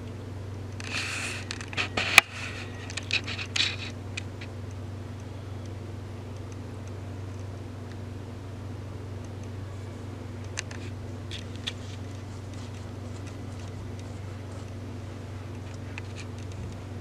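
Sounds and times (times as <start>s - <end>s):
fan humming: 0.0s - 17.0s
scraping and rustling handling: 0.8s - 4.6s, 10.5s - 17.0s
sharp clicks: 10.4s - 14.9s.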